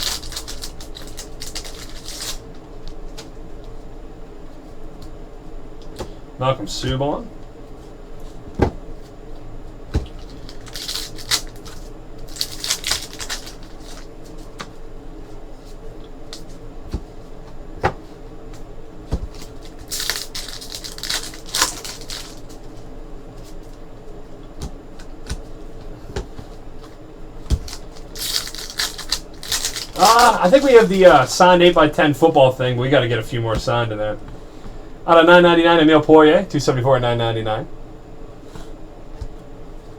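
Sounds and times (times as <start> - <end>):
foil wrapper tearing: 0.0 - 2.4, 10.2 - 14.6, 19.3 - 22.7, 27.6 - 31.4.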